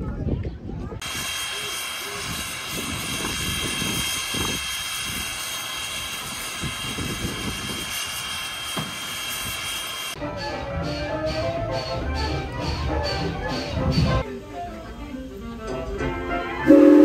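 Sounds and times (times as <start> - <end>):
steam hissing roar: 1.0 - 10.2.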